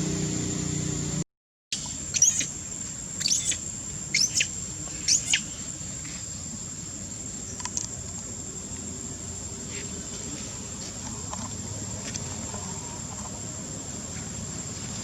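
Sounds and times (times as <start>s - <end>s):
thin high insect drone: 0.0s - 1.2s, 1.8s - 15.0s.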